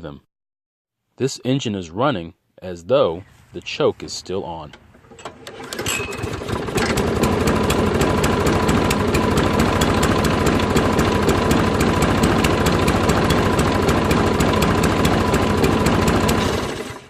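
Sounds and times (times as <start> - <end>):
lawn mower engine running slowly: 4.8 - 17.0.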